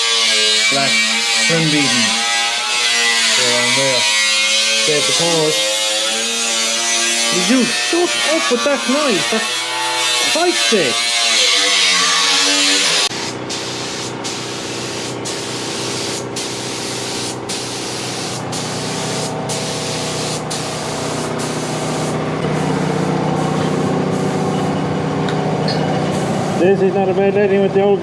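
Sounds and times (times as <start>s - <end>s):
paint spray gun hissing: 13.1s - 24.8s.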